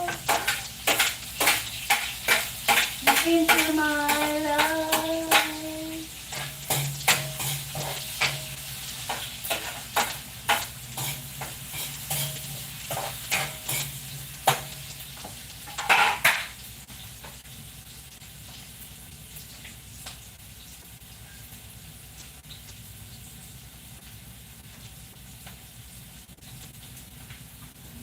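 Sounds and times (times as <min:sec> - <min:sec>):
utensil clinking against a pan: 0:00.0 - 0:14.9, 0:15.6 - 0:16.6
food sizzling: 0:00.0 - 0:28.0.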